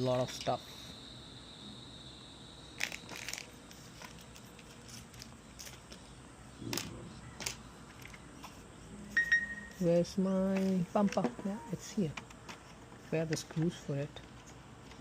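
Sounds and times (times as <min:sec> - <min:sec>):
small parts rustling: 0:02.8 - 0:08.7.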